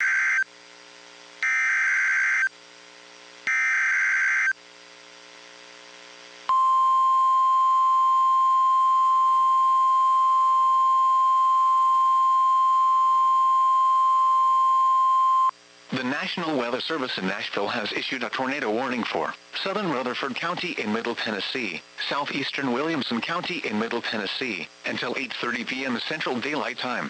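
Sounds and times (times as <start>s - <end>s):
faint receiver hum: 0.0s - 27.0s
steady alarm tone: 1.4s - 2.5s, 3.5s - 4.6s.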